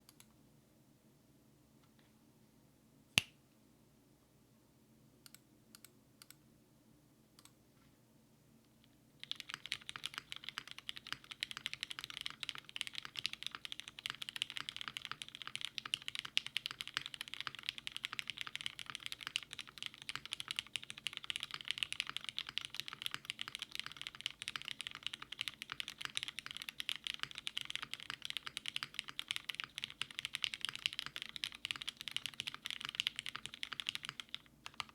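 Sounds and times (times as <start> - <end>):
mechanical keyboard typing: 9.2 - 34.9.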